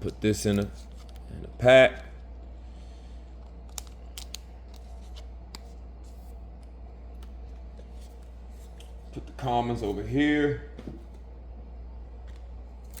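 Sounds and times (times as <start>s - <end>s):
cards and plastic packaging rustling: 0.0s - 2.0s, 3.5s - 6.4s
steady low hum: 0.0s - 13.0s.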